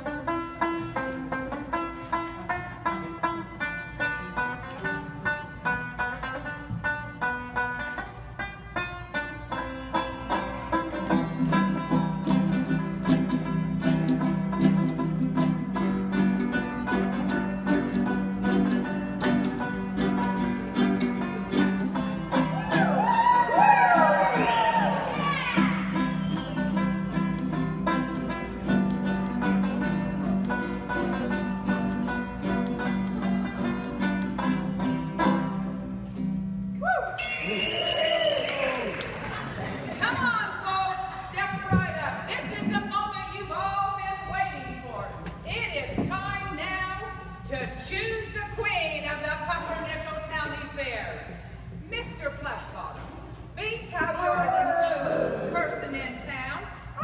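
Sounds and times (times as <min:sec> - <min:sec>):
banjo picking: 0:00.0 - 0:37.9
plucked string music: 0:00.0 - 0:37.9
low accompaniment: 0:00.0 - 0:48.3.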